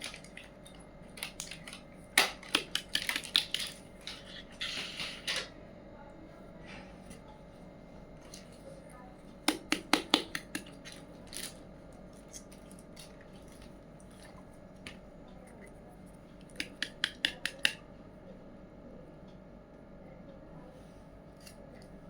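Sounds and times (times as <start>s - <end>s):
sharp clicks of small hard items: 0.0s - 5.5s, 16.5s - 17.8s.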